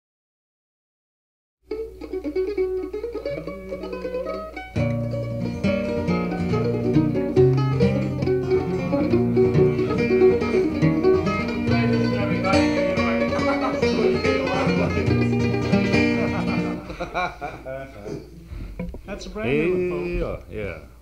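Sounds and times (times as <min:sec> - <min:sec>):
plucked string lead: 0:01.7 - 0:17.0
acoustic string band with bass: 0:01.7 - 0:20.5.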